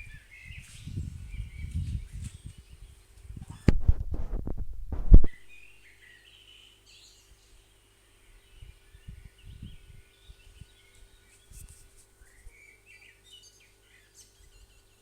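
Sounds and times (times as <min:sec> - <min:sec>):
wind buffeting microphone: 0:00.0 - 0:05.6, 0:08.6 - 0:10.8
small birds chirping: 0:00.0 - 0:15.0.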